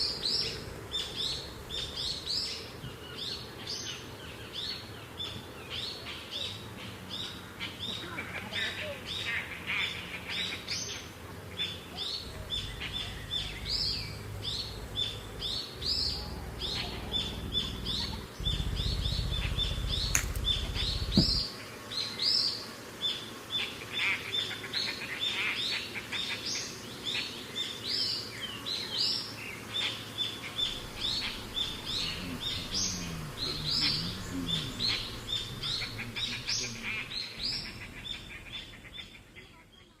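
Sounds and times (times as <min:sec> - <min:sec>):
small songbirds chirping: 0:00.0 - 0:40.0
low rumble: 0:12.2 - 0:21.4, 0:30.6 - 0:39.4.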